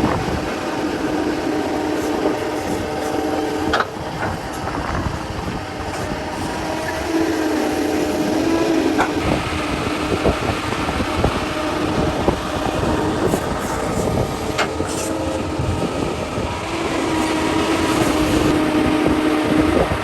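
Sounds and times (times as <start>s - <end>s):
droning hydraulic tone: 0.0s - 20.0s
excavator diesel engine: 0.0s - 20.0s.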